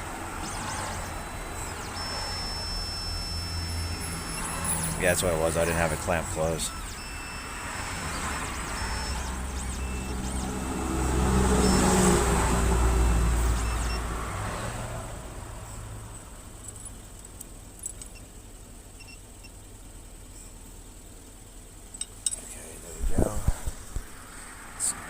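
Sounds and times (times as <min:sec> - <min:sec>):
key cutting machine motors whirring: 0:00.0 - 0:14.0.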